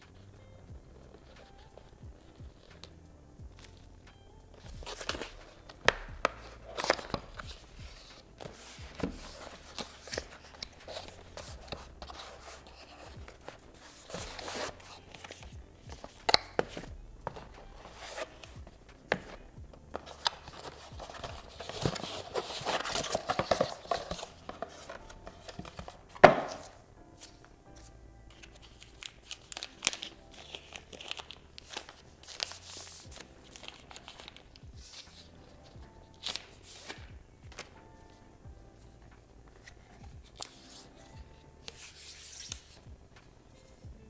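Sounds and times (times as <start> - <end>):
packaging rustling and tearing: 4.6 - 26.8, 28.3 - 37.7.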